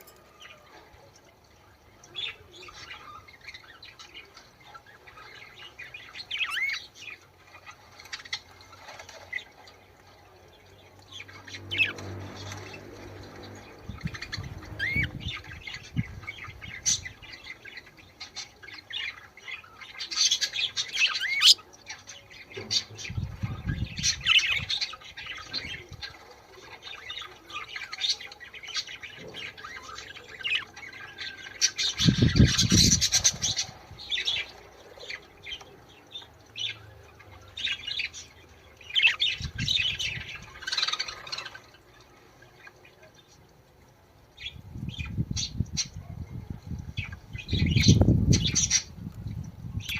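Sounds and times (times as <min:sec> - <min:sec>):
budgerigars chattering: 0:14.1 - 0:17.6, 0:20.0 - 0:21.6.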